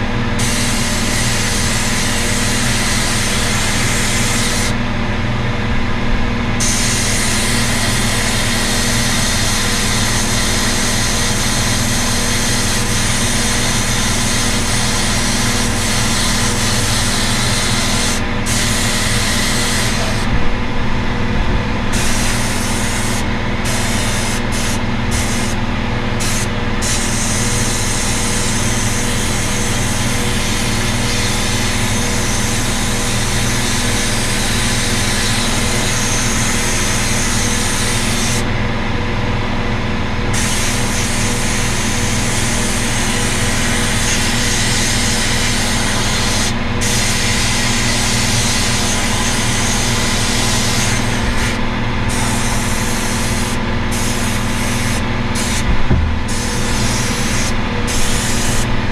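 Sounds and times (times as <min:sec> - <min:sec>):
machine humming: 0:00.0 - 0:47.0, 0:47.7 - 0:58.9
loud hiss: 0:44.0 - 0:58.7.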